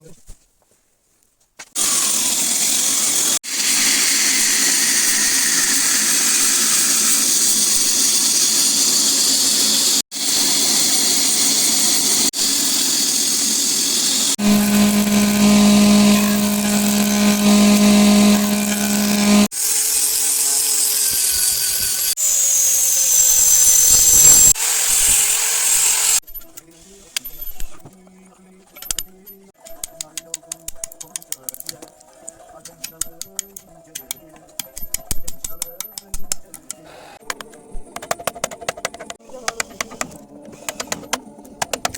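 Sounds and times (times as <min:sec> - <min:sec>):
power tool cutting wood: 0:01.8 - 0:26.2
tool whine rising and falling: 0:14.0 - 0:19.5, 0:21.6 - 0:26.2
motor humming: 0:14.2 - 0:19.5, 0:22.2 - 0:26.2.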